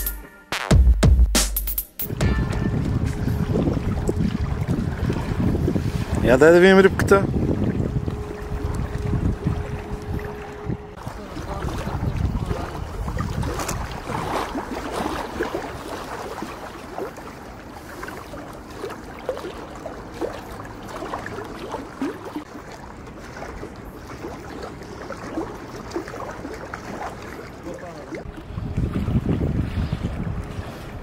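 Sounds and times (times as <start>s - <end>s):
wind rumbling on microphone: 2.1s - 18.0s, 28.2s - 31.0s
water splashing and lapping: 2.1s - 31.0s.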